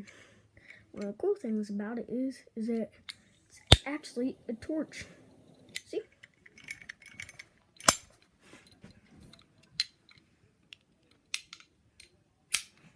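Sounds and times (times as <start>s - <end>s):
torch lighter clicking: 3.7s - 4.0s.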